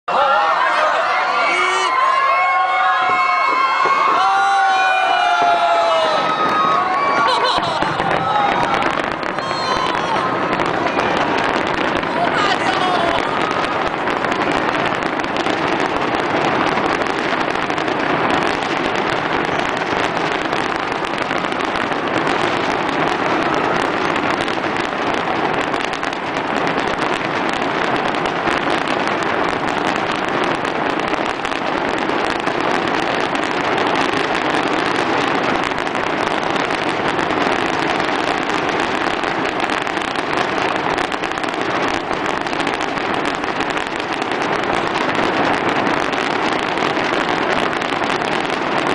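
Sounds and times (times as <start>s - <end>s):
fireworks crackling: 0.1s - 48.9s.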